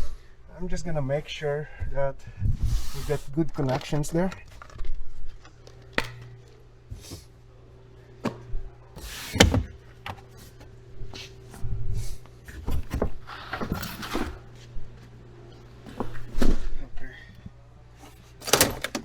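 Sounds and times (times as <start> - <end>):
steady low hum: 0.0 - 19.0
trim panels clicking and knocking: 18.4 - 19.0.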